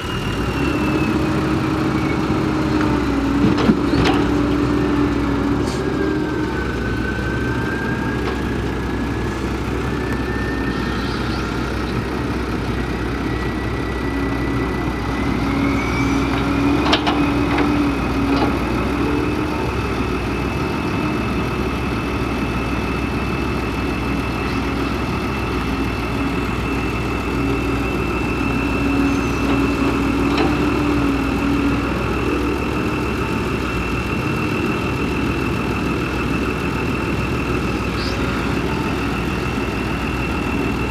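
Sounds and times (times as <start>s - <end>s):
excavator diesel engine running: 0.0s - 40.9s
thin high whine: 10.0s - 12.4s.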